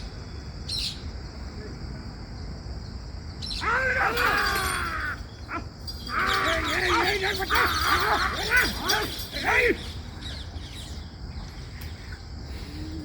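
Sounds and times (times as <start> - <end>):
insects chirping: 0.0 - 13.0
voices calling out: 3.4 - 13.0.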